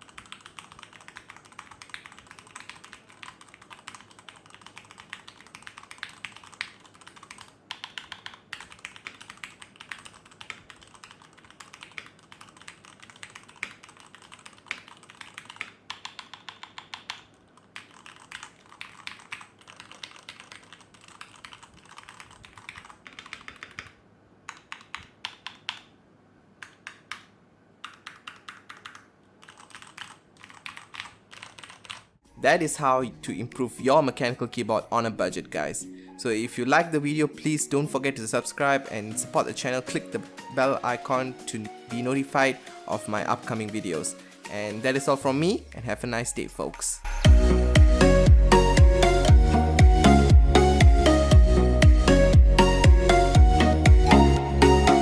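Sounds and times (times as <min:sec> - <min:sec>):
mechanical keyboard typing: 0:00.0 - 0:25.9, 0:26.6 - 0:32.1.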